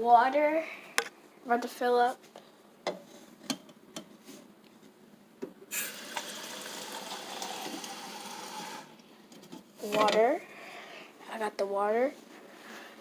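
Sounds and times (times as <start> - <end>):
tap water filling container: 5.7 - 8.9.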